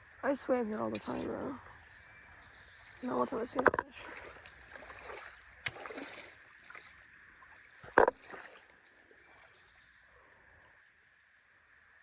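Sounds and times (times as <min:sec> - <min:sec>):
creek water rushing: 0:02.8 - 0:09.6.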